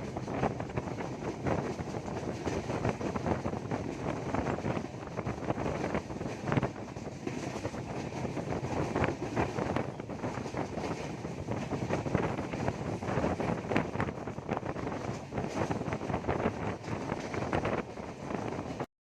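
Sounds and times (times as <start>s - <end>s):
train wheels clattering over rails: 0.0s - 18.8s
wind noise on microphone: 0.0s - 18.9s.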